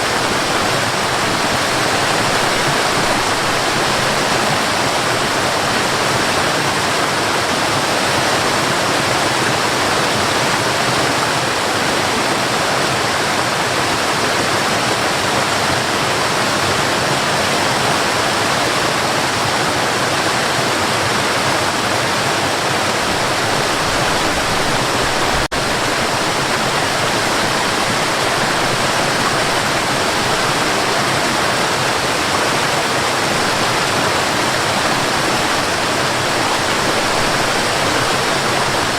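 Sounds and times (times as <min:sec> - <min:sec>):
river rushing over rocks: 0:00.0 - 0:38.9.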